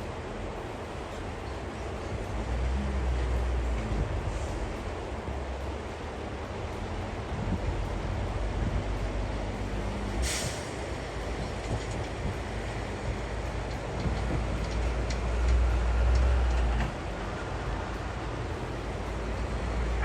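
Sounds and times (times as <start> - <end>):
train rumbling past: 0.0 - 20.0
short hiss: 10.2 - 11.0.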